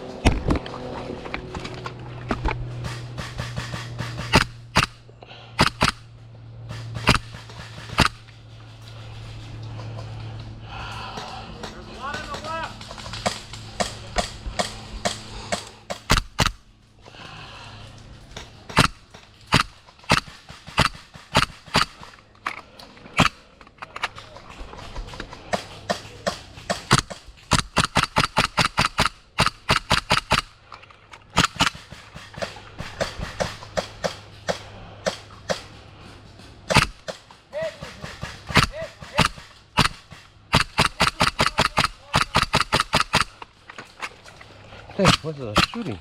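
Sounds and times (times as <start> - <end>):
airsoft guns firing: 2.8 - 8.3, 12.0 - 16.7, 18.4 - 22.4, 24.9 - 30.6, 31.3 - 35.8, 36.6 - 43.4, 45.0 - 45.9.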